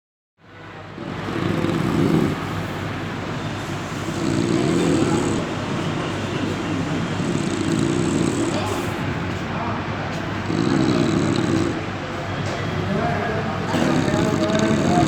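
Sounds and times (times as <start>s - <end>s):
man snoring: 1.1s - 2.5s, 4.1s - 5.5s, 6.9s - 9.0s, 10.4s - 11.8s, 13.7s - 15.0s.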